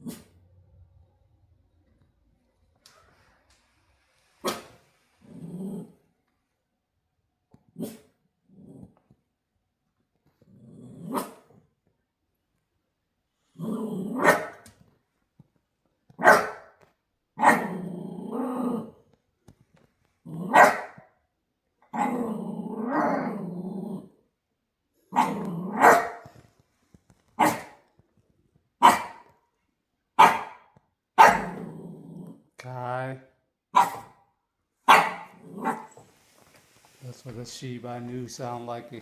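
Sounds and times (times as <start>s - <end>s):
dog barking: 4.4s - 4.8s, 11.1s - 11.5s, 14.1s - 14.6s, 16.2s - 16.8s, 17.4s - 17.8s, 20.4s - 21.1s, 25.1s - 26.3s, 27.4s - 27.8s, 28.8s - 29.3s, 30.2s - 31.7s, 33.8s - 34.2s, 34.9s - 36.0s.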